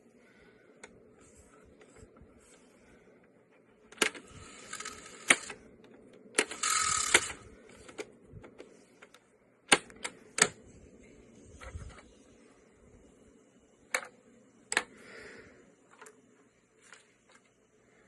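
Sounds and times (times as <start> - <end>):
cassette transport whir: 0.6 - 12.3.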